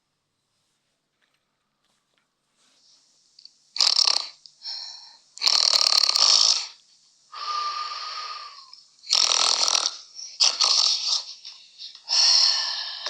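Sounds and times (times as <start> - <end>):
person snoring loudly: 3.8 - 13.0.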